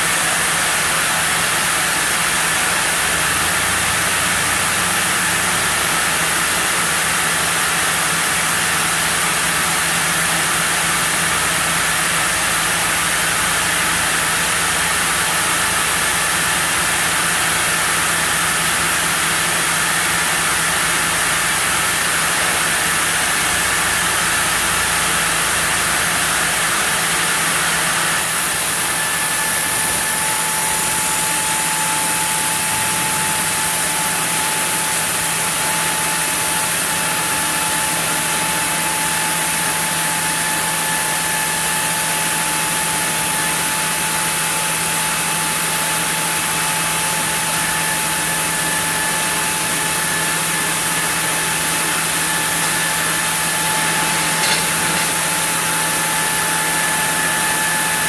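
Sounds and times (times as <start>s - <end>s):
sawmill saw humming and hissing: 0.0s - 58.0s
thin high whine: 28.0s - 43.6s, 49.1s - 58.0s.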